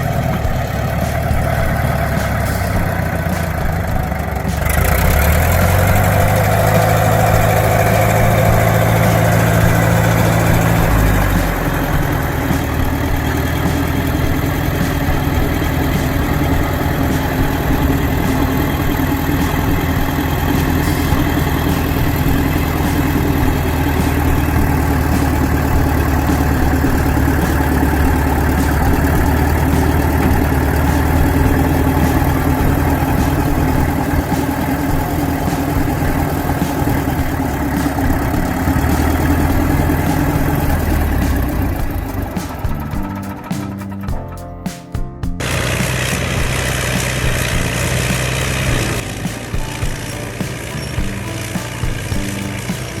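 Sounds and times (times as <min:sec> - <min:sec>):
heavy machinery engine running: 0:00.0 - 0:44.3, 0:45.4 - 0:53.0.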